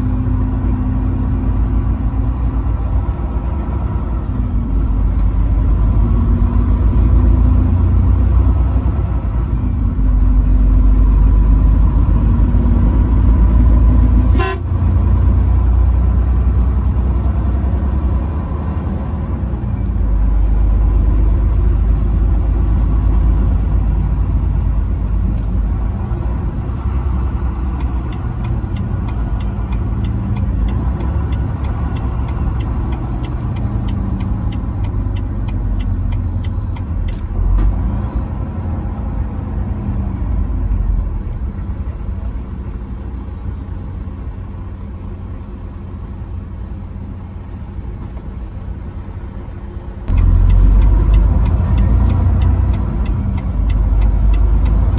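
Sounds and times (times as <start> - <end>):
truck engine and road rumble: 0.0 - 54.9
regular ticking: 26.8 - 37.2, 50.1 - 54.9.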